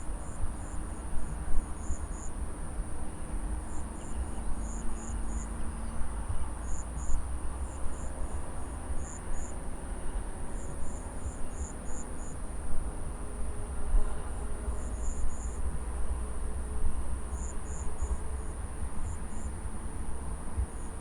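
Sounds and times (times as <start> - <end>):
insects droning: 3.7 - 5.9, 14.0 - 15.6, 17.3 - 19.6.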